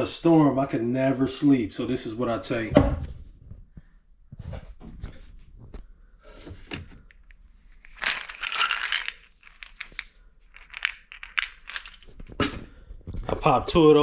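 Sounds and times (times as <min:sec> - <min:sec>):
package crinkling: 0:07.1 - 0:12.4.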